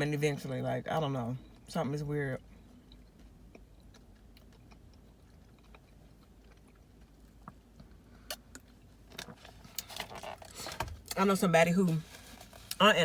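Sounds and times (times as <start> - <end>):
person chewing: 2.4 - 11.2.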